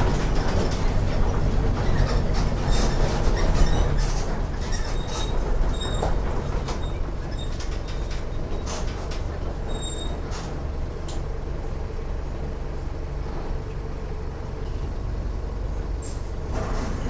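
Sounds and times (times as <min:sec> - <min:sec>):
body clicks and rattles: 0:00.0 - 0:04.3
bus diesel engine running: 0:00.0 - 0:17.0.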